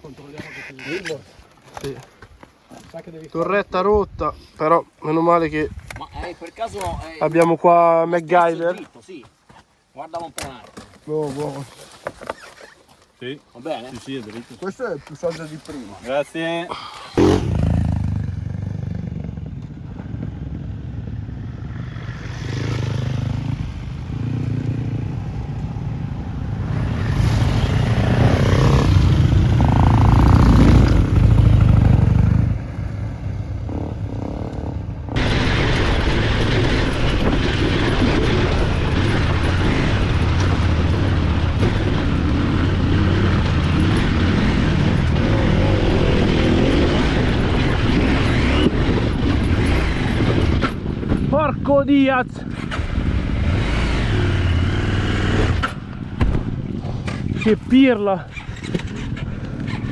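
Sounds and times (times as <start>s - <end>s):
wind noise: 3.6s - 4.6s, 5.4s - 7.2s, 19.8s - 54.2s
motorcycle engine revving: 17.2s - 51.3s, 52.4s - 57.7s.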